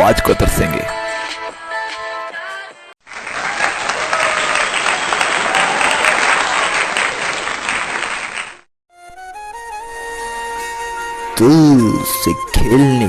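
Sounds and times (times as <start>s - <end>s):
background music: 0.0s - 2.9s, 8.9s - 13.0s
audience applauding and cheering: 3.0s - 8.7s.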